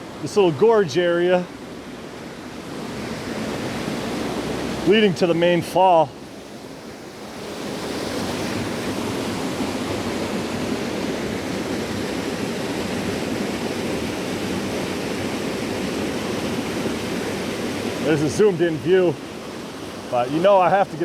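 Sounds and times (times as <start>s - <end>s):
waterfall and rushing water: 0.0s - 21.0s.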